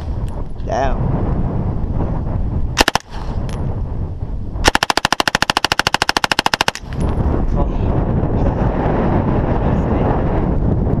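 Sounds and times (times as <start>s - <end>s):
automatic gunfire burst: 2.8s - 3.2s, 4.6s - 6.9s
gunshots: 2.8s - 3.4s, 4.6s - 7.0s.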